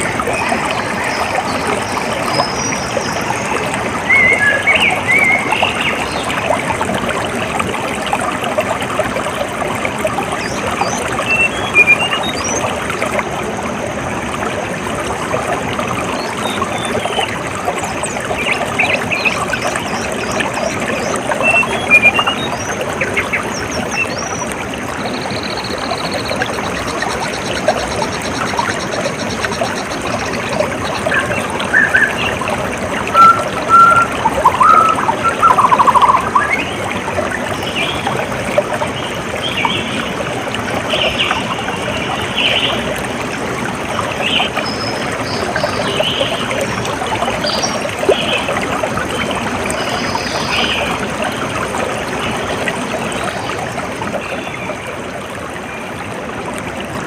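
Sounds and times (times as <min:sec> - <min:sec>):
water trickling: 0:00.0 - 0:57.0
bird chirps: 0:33.2 - 0:36.7.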